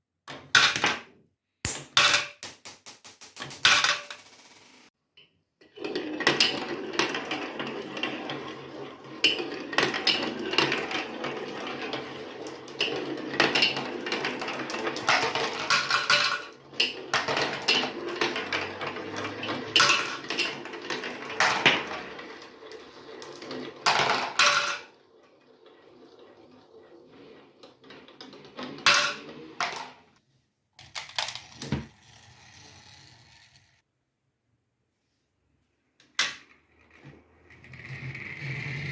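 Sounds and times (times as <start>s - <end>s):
marbles clicking and knocking: 1.7s - 4.9s
marbles rolling on plastic track: 2.6s - 4.9s, 5.8s - 30.1s, 30.8s - 33.8s, 36.2s - 38.9s.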